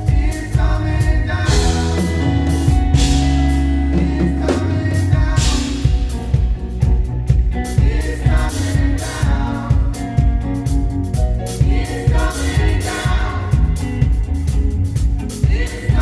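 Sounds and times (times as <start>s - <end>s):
person singing: 0.0s - 6.6s
drum kit steady beat: 0.0s - 16.0s
low bass notes: 0.0s - 16.0s.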